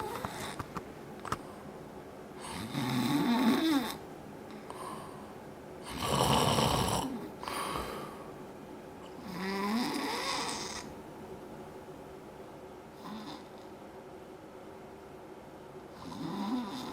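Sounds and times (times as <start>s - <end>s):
loud rattling snoring: 2.4s - 4.0s, 5.9s - 7.2s, 9.2s - 10.9s, 16.0s - 16.9s.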